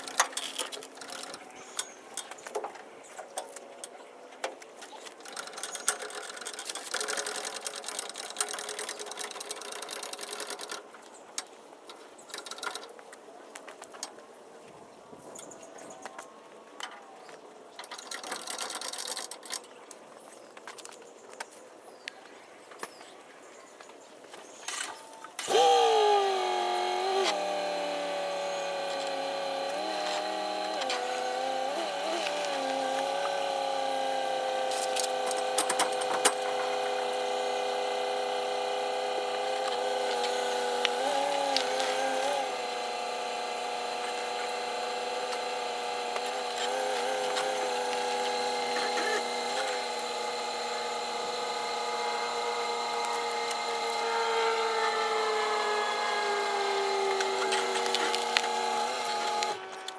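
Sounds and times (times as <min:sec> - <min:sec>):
sharp clicks: 0:24.7 - 0:59.9
motor humming: 0:25.4 - 0:59.9.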